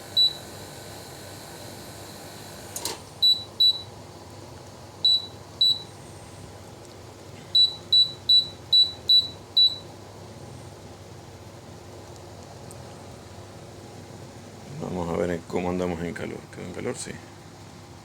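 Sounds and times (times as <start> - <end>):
air conditioner short high beeps: 0.0 - 0.6, 2.8 - 4.0, 5.0 - 6.0, 7.5 - 10.0.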